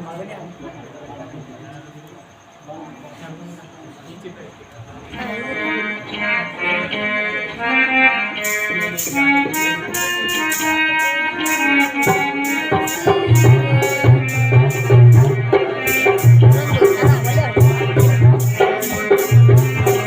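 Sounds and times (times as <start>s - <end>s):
sustained melody line: 5.2s - 20.0s
shaking jingling rhythm: 8.4s - 20.0s
heavy low drum beat: 12.0s - 20.0s.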